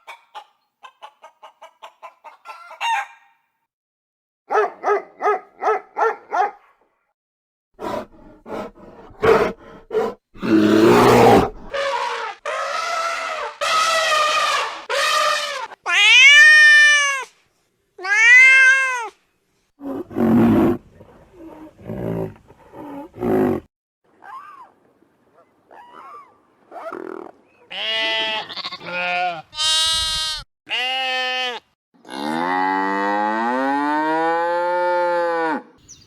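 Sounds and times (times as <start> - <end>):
cats meowing: 15.9 - 17.3, 18.0 - 19.1.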